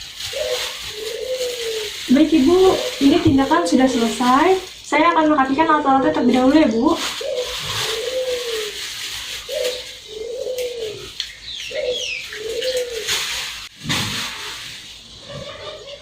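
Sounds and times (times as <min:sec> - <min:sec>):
dove cooing: 0:00.2 - 0:04.7, 0:06.2 - 0:13.6, 0:15.2 - 0:16.0
small bird chirping: 0:09.4 - 0:13.0.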